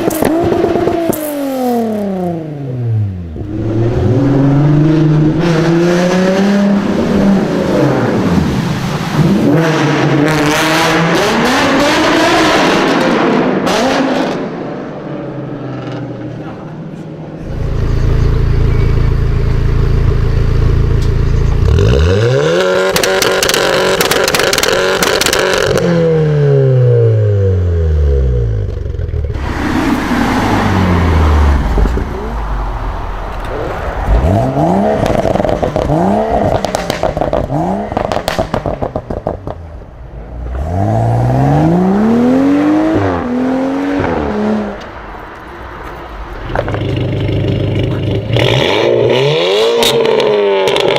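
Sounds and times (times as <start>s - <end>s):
car engine idling and revving: 0.0s - 50.9s
exhaust crackles and pops: 16.9s - 21.9s, 22.8s - 25.9s, 31.5s - 40.1s, 45.8s - 48.5s, 49.8s - 50.9s.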